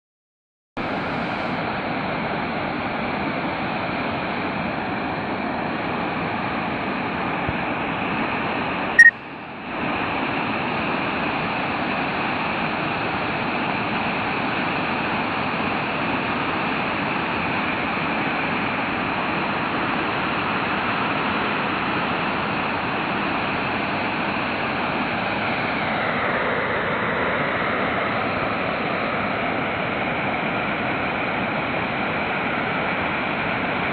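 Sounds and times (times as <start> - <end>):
short beep: 9.0 - 9.2.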